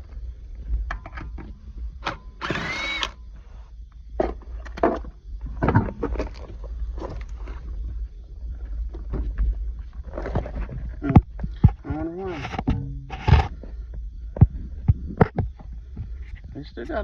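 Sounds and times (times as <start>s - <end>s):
mechanical whir: 2.0s - 3.4s.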